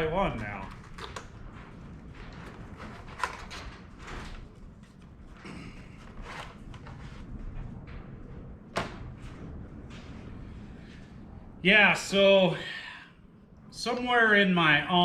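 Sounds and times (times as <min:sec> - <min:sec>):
cable handling rustling: 0:00.0 - 0:07.3.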